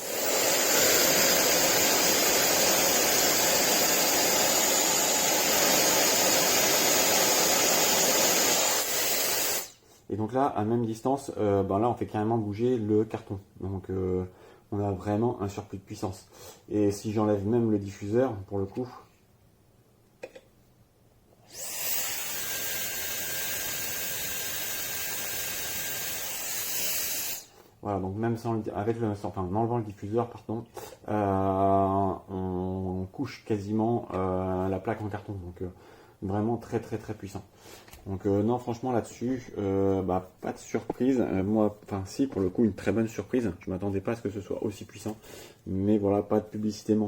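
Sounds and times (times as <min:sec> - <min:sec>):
hair dryer blowing with high whine: 0:00.0 - 0:09.7, 0:21.5 - 0:27.5.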